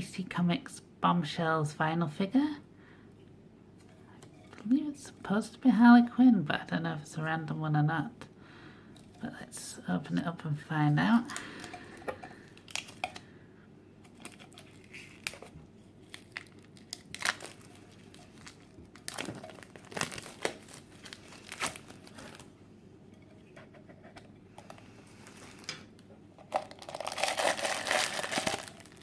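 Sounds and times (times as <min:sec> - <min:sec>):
plastic packaging crinkling: 0:11.0 - 0:13.2, 0:14.0 - 0:22.6, 0:26.4 - 0:29.0.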